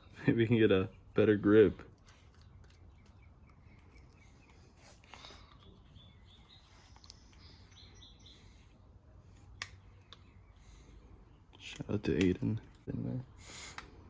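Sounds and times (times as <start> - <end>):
small sharp clicks: 9.4 - 10.3.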